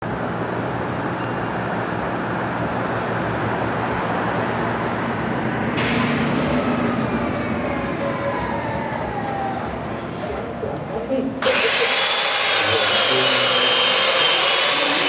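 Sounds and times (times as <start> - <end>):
heavy vehicle engine rumbling: 0.0 - 15.0
air brake hiss: 5.8 - 6.5.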